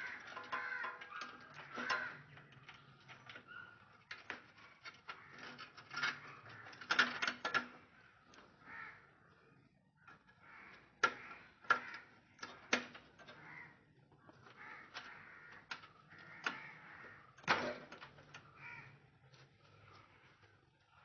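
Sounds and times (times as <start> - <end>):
sharp clicks and knocks: 0.0 - 8.5, 10.1 - 13.5, 14.2 - 18.6.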